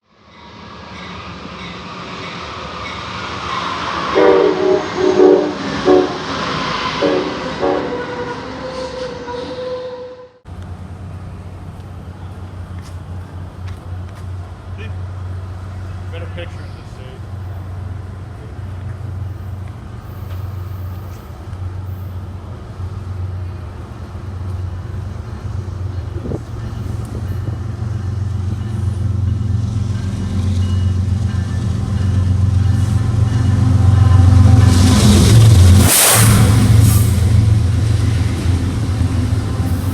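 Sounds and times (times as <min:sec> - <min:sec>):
train rumbling: 0:00.0 - 0:39.9
train horn blasts: 0:03.6 - 0:10.4
short high-pitched rising sound: 0:34.3 - 0:37.6.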